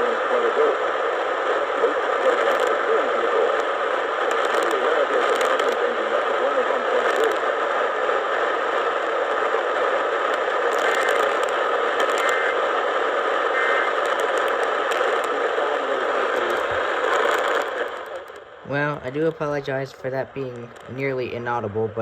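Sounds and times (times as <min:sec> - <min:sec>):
radio static hiss and crackle: 0:00.0 - 0:22.0.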